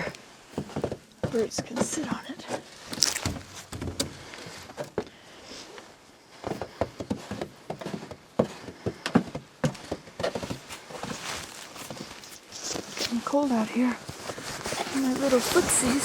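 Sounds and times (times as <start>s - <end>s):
objects knocking and clunking: 0.0s - 5.1s
footsteps: 0.0s - 16.0s.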